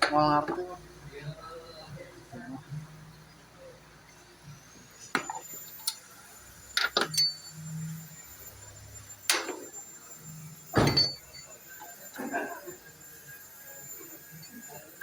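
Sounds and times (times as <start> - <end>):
metallic knocks and clanks: 10.8 - 11.3.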